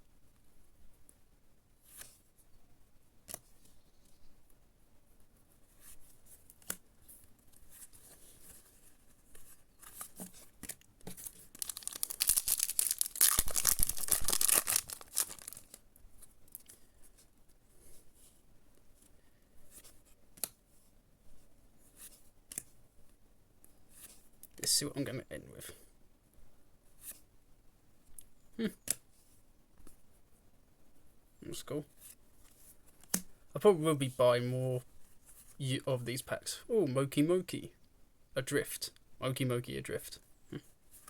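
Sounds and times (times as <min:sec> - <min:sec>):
foil wrapper tearing: 0:11.2 - 0:15.8.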